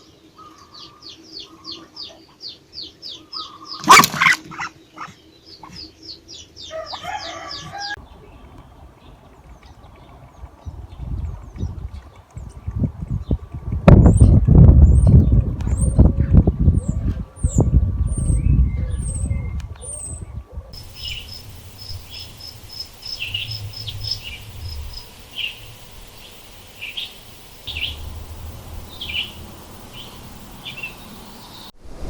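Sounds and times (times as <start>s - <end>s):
songbirds chirping: 0.0s - 31.8s
faint hiss: 20.8s - 32.0s
loud low rumble: 20.8s - 32.0s.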